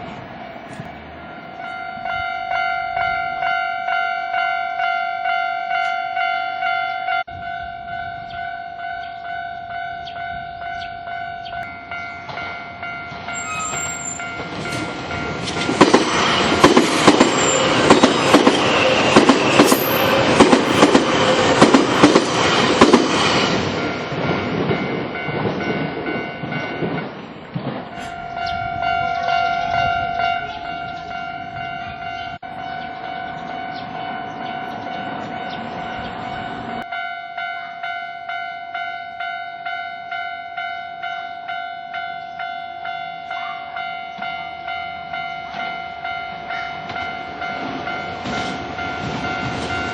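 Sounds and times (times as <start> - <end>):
level crossing warning bell: 0.8 - 49.9
train wheels clattering: 12.2 - 28.3.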